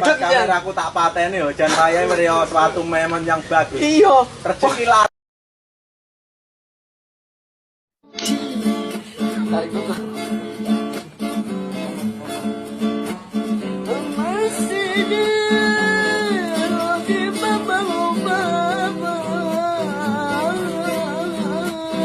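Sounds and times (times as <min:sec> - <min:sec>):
rapidly plucked guitar: 0:08.0 - 0:22.0.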